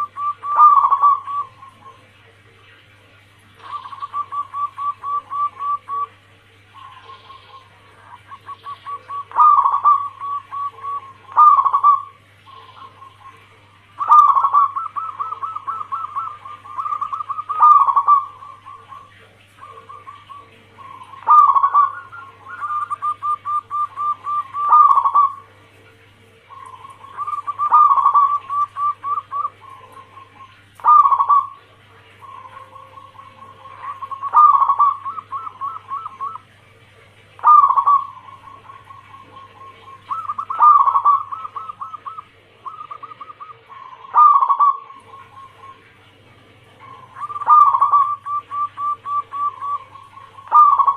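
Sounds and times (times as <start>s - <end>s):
dove cooing: 0.0s - 50.9s
faint low hum: 0.0s - 50.9s.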